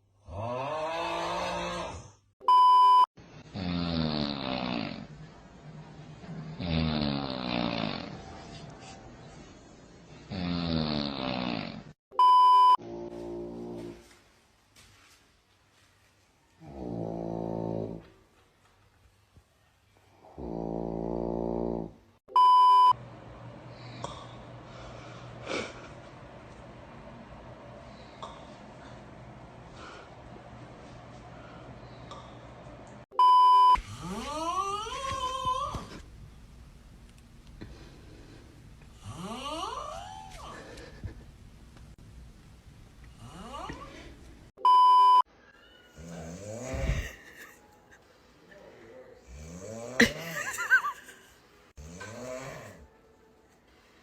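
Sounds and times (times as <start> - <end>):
person snoring: 0.2 - 2.2, 3.4 - 5.1, 6.5 - 8.3, 10.2 - 12.0, 20.2 - 22.0, 33.8 - 36.0, 38.9 - 41.1, 43.2 - 44.1, 46.0 - 47.2, 48.9 - 50.3, 51.8 - 52.9
low steady hum: 22.5 - 34.6, 35.4 - 45.1
quiet breath: 23.6 - 26.1, 27.7 - 32.8, 37.5 - 39.3, 48.0 - 49.3, 53.5 - 54.0.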